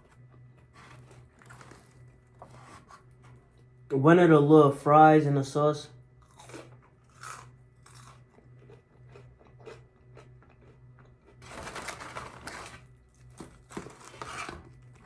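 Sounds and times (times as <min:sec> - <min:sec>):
person chewing crispy fries: 0:00.0 - 0:02.3, 0:06.2 - 0:15.0.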